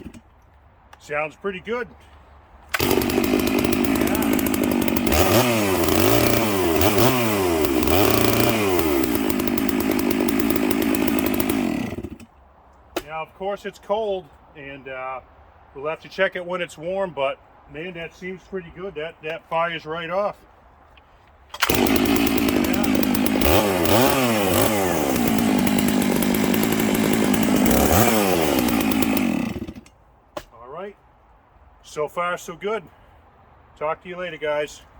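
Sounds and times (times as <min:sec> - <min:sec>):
chainsaw revving and idling: 0:00.0 - 0:00.2, 0:02.7 - 0:12.3, 0:21.6 - 0:29.9.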